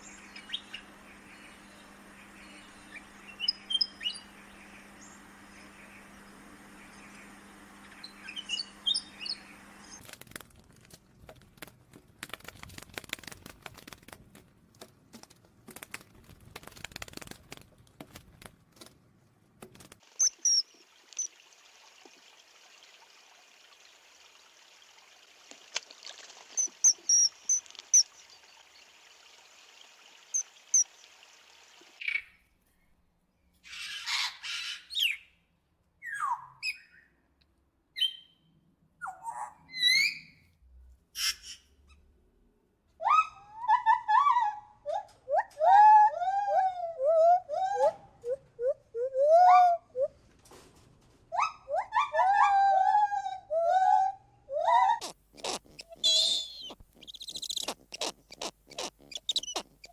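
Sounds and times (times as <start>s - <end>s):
birds chirping: 0.0s - 10.0s, 26.6s - 28.2s, 33.7s - 35.4s, 36.0s - 37.2s, 38.0s - 40.4s, 41.2s - 41.8s, 55.0s - 59.9s
rustling: 55.0s - 59.9s.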